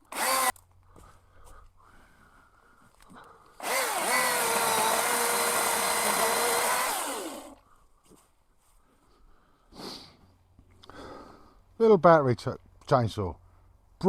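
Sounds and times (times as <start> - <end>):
battery chainsaw whining: 0.0 - 0.6, 3.6 - 7.6.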